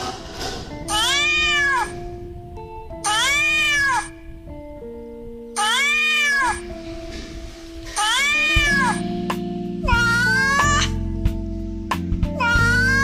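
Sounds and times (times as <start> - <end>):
cat meowing: 0.9 - 2.1, 3.0 - 4.3, 5.6 - 6.7, 8.0 - 9.0, 9.9 - 11.0, 12.4 - 13.0.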